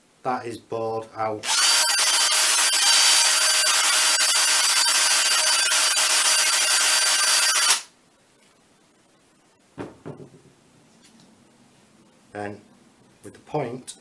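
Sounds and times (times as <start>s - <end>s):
power drill whining: 1.4s - 7.9s
short knock: 9.8s - 10.5s.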